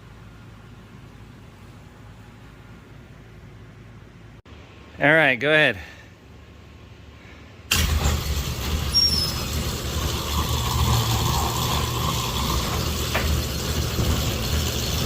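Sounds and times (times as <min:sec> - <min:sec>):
garage door motor rumbling: 0:07.7 - 0:15.0.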